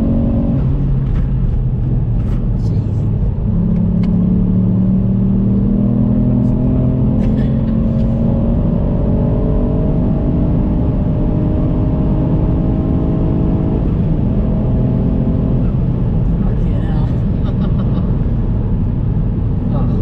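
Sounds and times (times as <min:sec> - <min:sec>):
road noise: 0:00.0 - 0:20.0.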